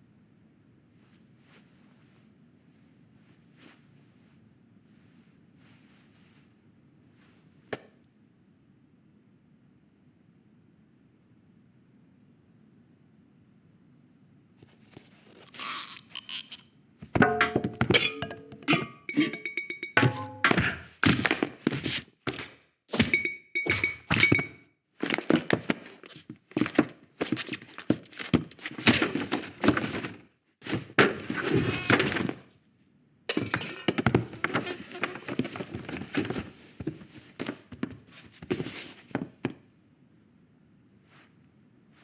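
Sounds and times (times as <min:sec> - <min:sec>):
short high tones: 0:17.2 - 0:20.6.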